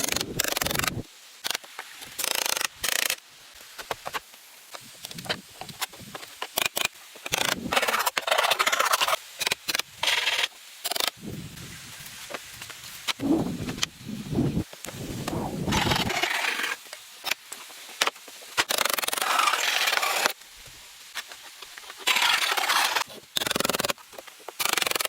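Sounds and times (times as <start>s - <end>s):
rubbing and scraping: 13.2s - 16.8s, 21.3s - 23.1s.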